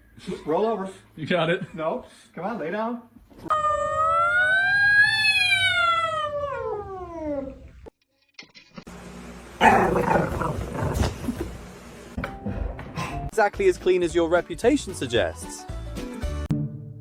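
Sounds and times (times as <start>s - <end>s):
dog howling: 3.5s - 7.6s, 9.6s - 11.0s.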